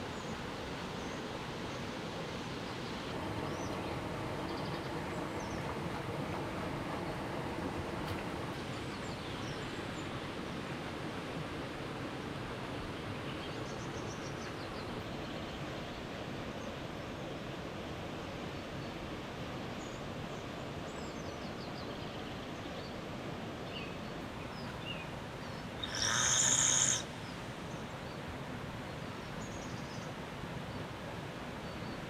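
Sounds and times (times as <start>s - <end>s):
faint bird chirps and trills: 0.0s - 10.3s, 19.7s - 30.9s, 31.6s - 32.0s
forest background noise: 0.0s - 32.0s.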